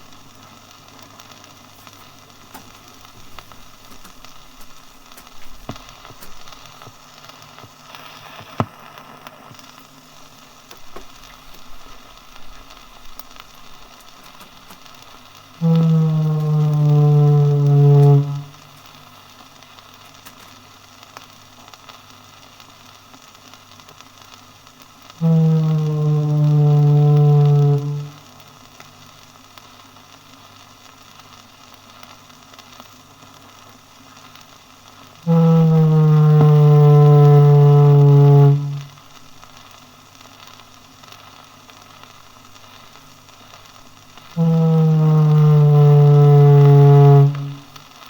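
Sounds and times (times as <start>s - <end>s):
old disc hiss and crackle: 0.0s - 48.0s
foghorn blast: 11.0s - 19.1s, 25.1s - 28.5s, 35.2s - 39.2s, 43.6s - 47.8s.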